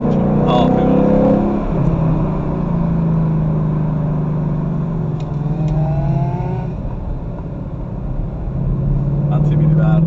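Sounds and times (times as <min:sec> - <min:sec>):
car engine accelerating: 0:00.0 - 0:10.0.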